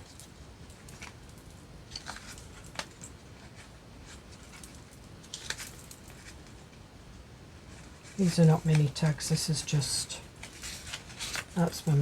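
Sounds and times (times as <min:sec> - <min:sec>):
paper rustling: 0:10.4 - 0:12.0.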